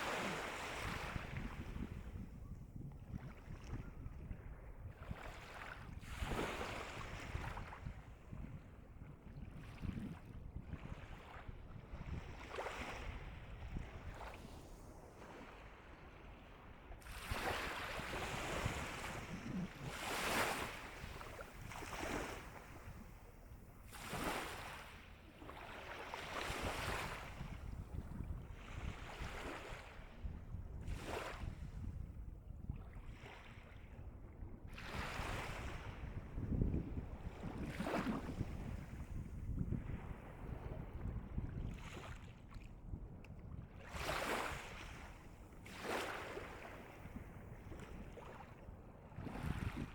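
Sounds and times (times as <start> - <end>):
sea waves breaking on shore: 0.0 - 2.2, 12.3 - 31.6, 34.8 - 36.3, 37.1 - 42.2, 43.8 - 49.9.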